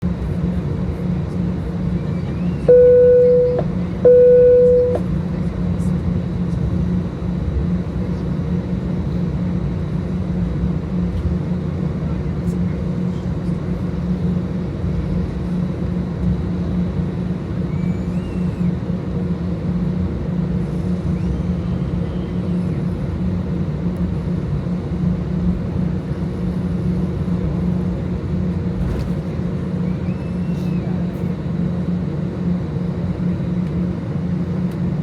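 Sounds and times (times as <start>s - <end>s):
aircraft rolling rumble: 0.0s - 35.0s
aircraft engines humming: 0.1s - 35.0s.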